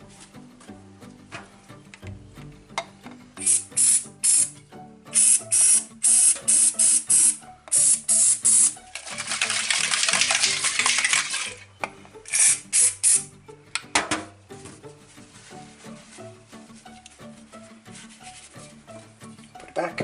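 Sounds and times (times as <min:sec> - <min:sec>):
background music: 0:00.0 - 0:20.0.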